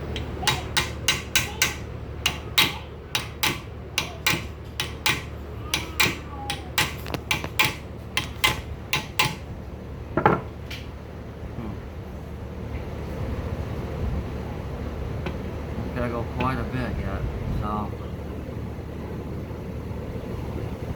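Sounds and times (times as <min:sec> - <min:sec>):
fan humming: 0:00.0 - 0:20.9
hammer tapping on metal: 0:00.1 - 0:09.5.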